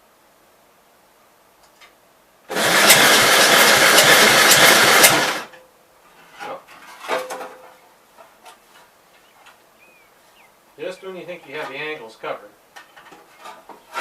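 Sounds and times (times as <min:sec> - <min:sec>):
engine cranking by starter: 0:02.5 - 0:05.6.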